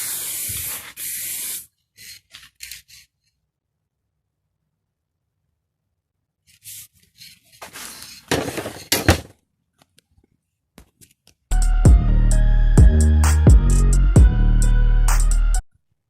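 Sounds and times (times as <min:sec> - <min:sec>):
aerosol spray can hissing: 0:00.0 - 0:02.2
handling noise: 0:07.6 - 0:09.4
music: 0:11.5 - 0:15.6.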